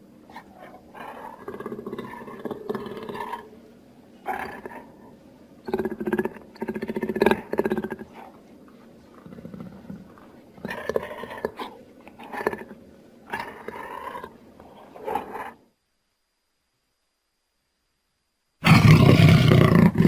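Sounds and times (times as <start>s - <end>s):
jaguar rough calls: 0.3s - 3.6s, 4.2s - 8.4s, 9.1s - 15.6s, 18.6s - 20.0s.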